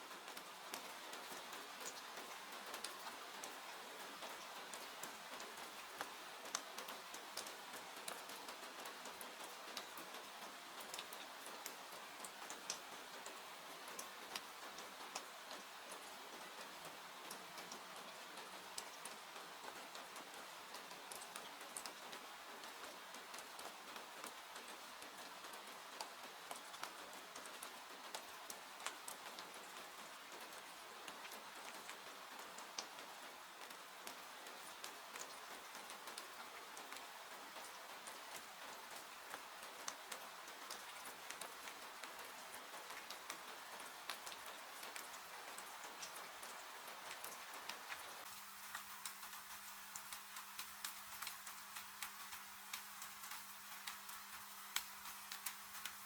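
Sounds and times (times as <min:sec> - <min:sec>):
faint steady rain: 0:00.0 - 0:56.0
wood fire crackling: 0:47.7 - 0:56.0.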